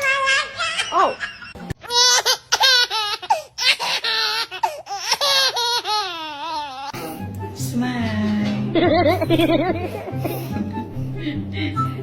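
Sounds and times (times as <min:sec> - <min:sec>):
small child laughing: 0:00.0 - 0:06.8.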